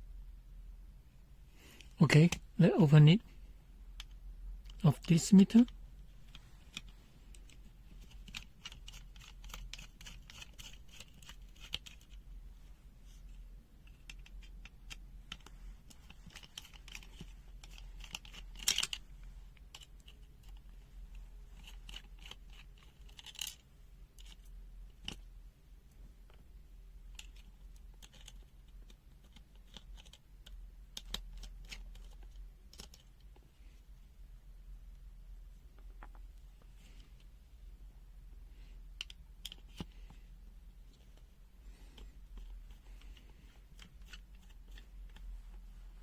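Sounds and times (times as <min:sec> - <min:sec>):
small plastic clicks and taps: 0:27.1 - 0:33.0, 0:39.0 - 0:40.2.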